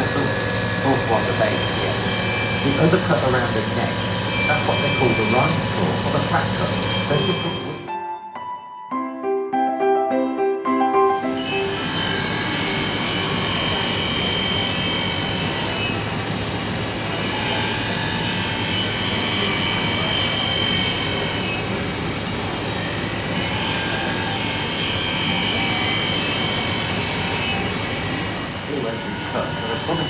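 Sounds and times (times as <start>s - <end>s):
cutting wheel grinding crystal: 0.0s - 7.9s, 11.3s - 30.0s
thin high whine: 0.0s - 7.9s.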